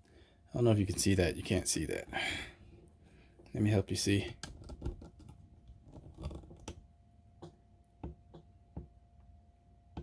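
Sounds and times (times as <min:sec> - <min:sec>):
faint steady hum: 0:00.0 - 0:10.0
handling clicks and knocks: 0:04.2 - 0:06.8.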